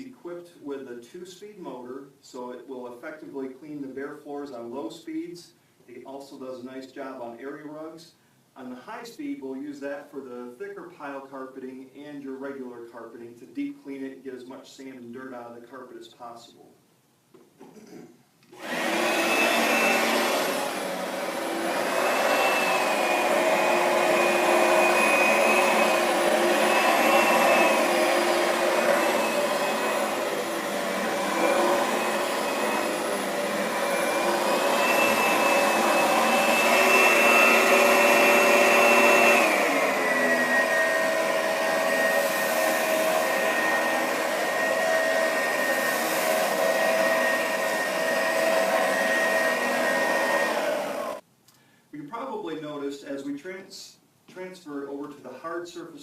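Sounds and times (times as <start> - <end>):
vacuum cleaner motor whining: 18.5 - 51.2.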